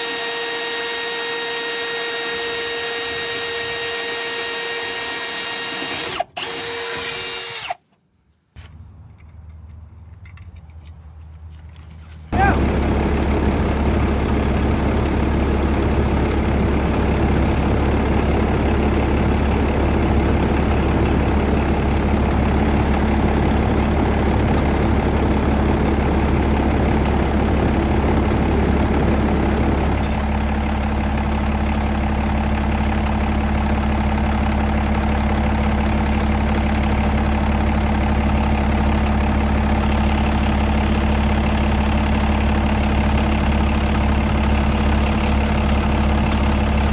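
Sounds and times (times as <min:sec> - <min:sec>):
diesel truck engine idling: 0:08.7 - 0:46.9.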